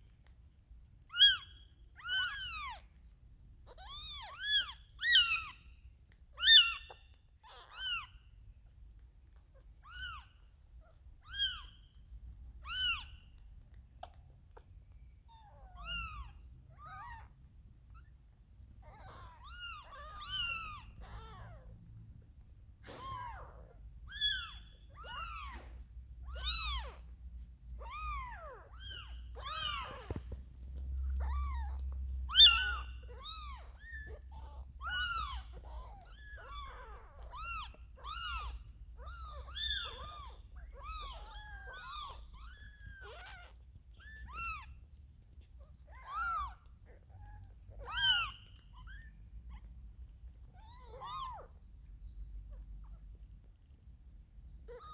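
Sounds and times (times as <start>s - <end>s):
faint low rumble: 0.0s - 54.9s
kittens mewing: 15.3s - 18.0s, 18.8s - 21.8s, 22.8s - 27.2s, 27.8s - 44.8s, 45.6s - 49.7s.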